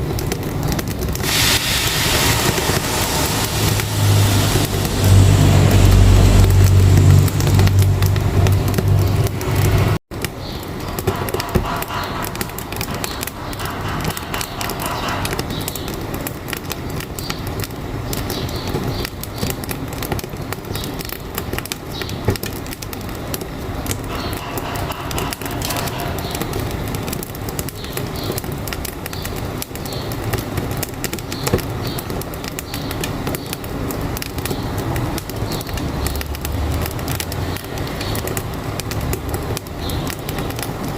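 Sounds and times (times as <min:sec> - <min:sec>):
wood fire crackling: 0:00.0 - 0:40.9
heavy low truck rumble: 0:00.6 - 0:10.0, 0:11.0 - 0:16.8, 0:23.0 - 0:27.7.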